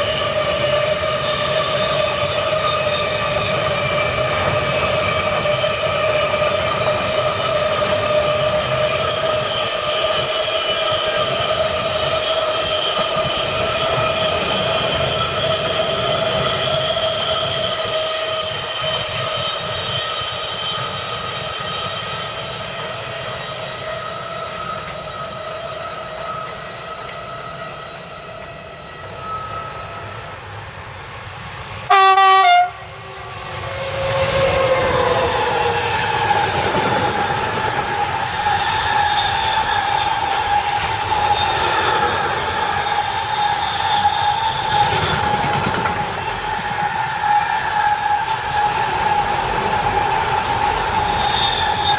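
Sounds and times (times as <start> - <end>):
rumble of rolling train: 0.0 - 51.9
train wheels squealing: 0.0 - 51.9
locomotive horn blast: 31.9 - 33.1.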